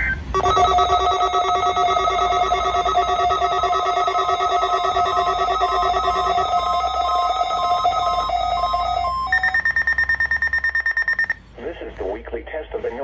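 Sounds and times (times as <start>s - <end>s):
multi-tone electronic alarm: 0.3s - 11.4s
rapid high beeps: 0.3s - 11.4s.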